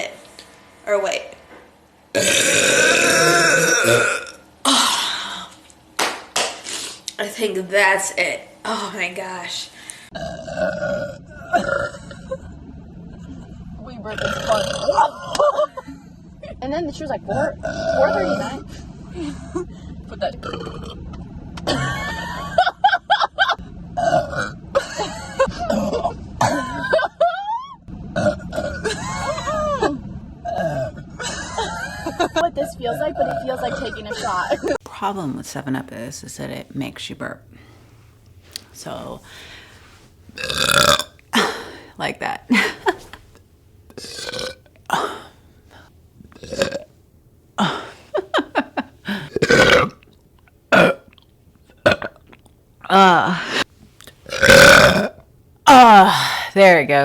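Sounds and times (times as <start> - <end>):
women burping: 2.1 - 5.5, 10.1 - 12.4, 14.0 - 15.6, 17.3 - 18.8, 24.0 - 27.0, 28.2 - 34.8, 40.4 - 41.9, 43.9 - 45.4, 46.3 - 46.9, 47.6 - 48.0, 49.0 - 50.1, 50.7 - 51.2, 51.8 - 53.7, 54.3 - 56.4.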